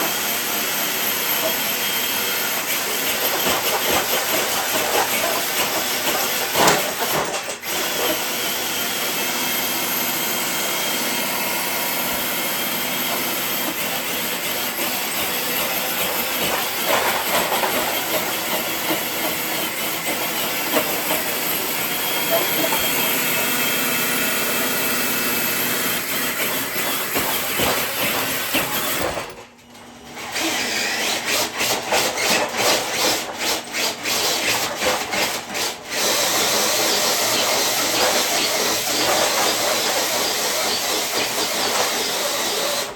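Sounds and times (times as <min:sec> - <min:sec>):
rc truck motor whining: 0:12.1 - 0:42.9.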